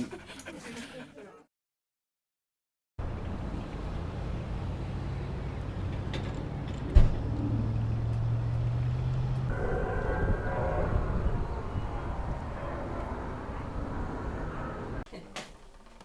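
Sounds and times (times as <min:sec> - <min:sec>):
engine humming: 0:03.0 - 0:15.0.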